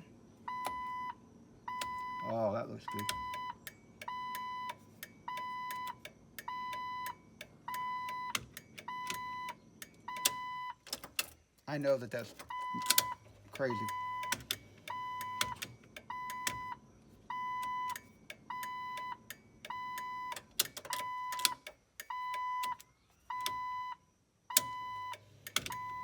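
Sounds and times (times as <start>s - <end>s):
switch clicks: 2.9s - 11.4s.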